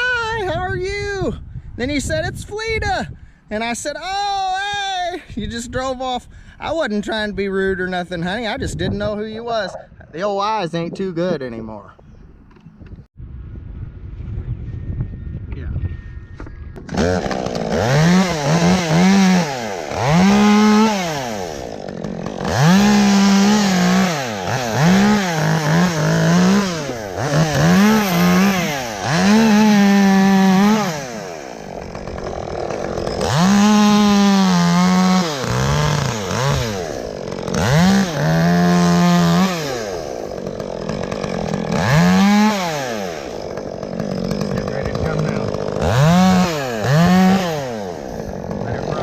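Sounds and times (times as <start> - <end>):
chainsaw revving and idling: 16.8 - 49.0.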